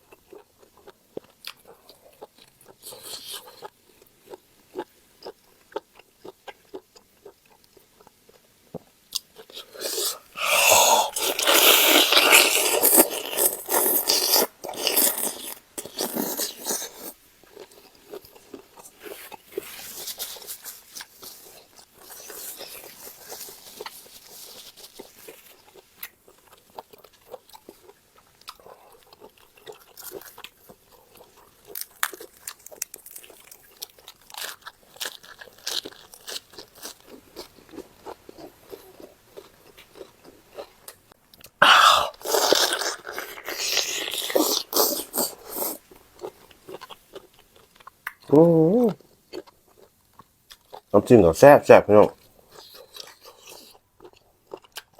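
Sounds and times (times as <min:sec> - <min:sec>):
person chewing crunchy food: 0:00.0 - 0:50.9, 0:52.1 - 0:54.9.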